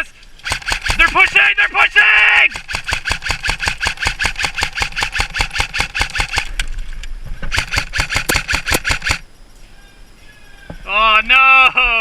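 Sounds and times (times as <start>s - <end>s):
airsoft rifle firing full auto: 0.4s - 1.5s, 2.4s - 6.6s, 7.5s - 9.2s.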